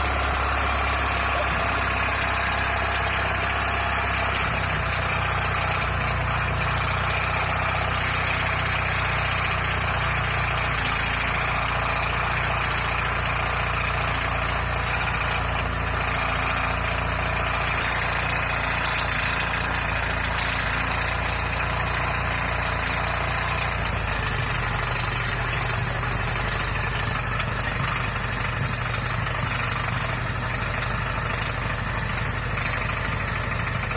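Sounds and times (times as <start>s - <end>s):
car engine idling: 0.0s - 33.9s
water pump knocking: 0.0s - 33.9s.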